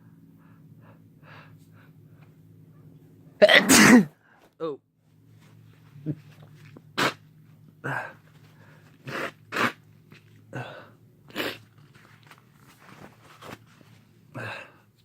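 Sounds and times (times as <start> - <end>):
man sneezing: 3.4 - 4.2.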